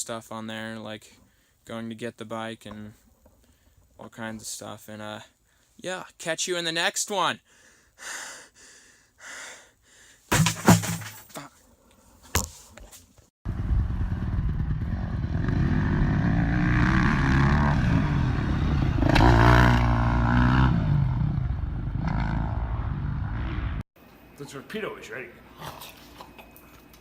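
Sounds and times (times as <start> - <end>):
clattering knocks: 10.3 - 11.4
dirt bike engine revving: 13.5 - 23.8.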